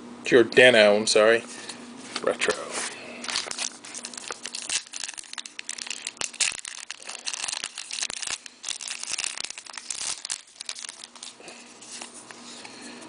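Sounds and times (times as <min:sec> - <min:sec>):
cards being handled: 0:02.1 - 0:12.8
wrapper crinkling and tearing: 0:03.2 - 0:12.3.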